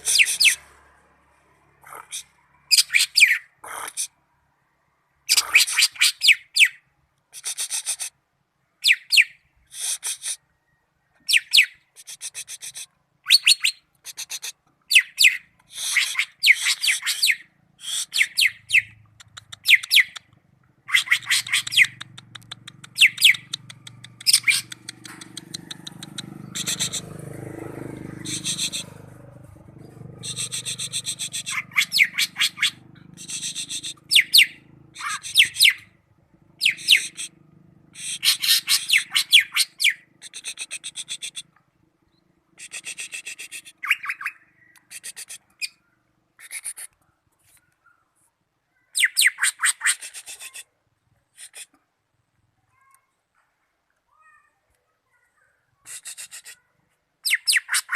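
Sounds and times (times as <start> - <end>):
bird singing high chattering: 0.0 - 0.6, 11.2 - 27.2, 28.0 - 29.1, 29.7 - 35.9, 36.5 - 41.5, 42.1 - 46.9, 57.2 - 57.9.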